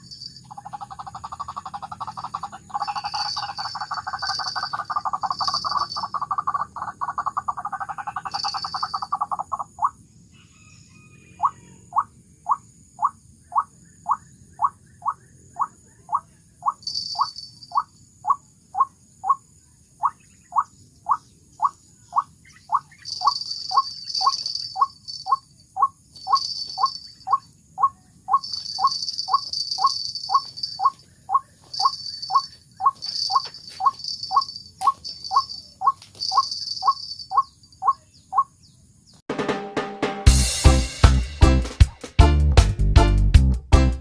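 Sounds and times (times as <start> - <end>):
music: 39.3 - 44.0.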